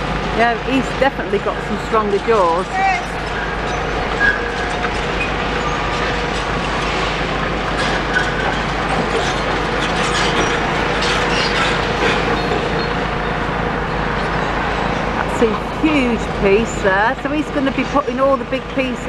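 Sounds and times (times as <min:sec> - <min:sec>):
excavator running: 0:00.0 - 0:19.0
metallic squeals and scraping: 0:01.7 - 0:16.6.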